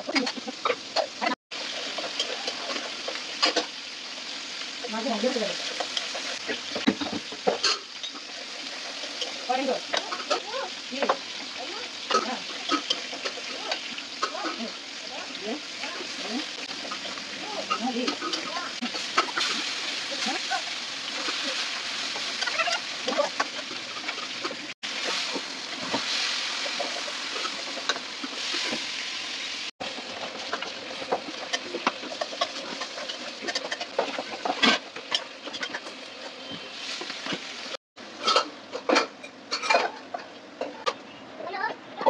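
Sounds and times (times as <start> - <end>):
kitchen clicks and clatter: 30.0 - 36.0, 38.2 - 41.0.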